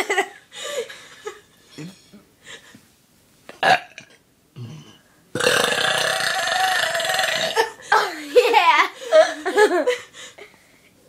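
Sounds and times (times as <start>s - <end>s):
person burping: 3.6s - 7.8s.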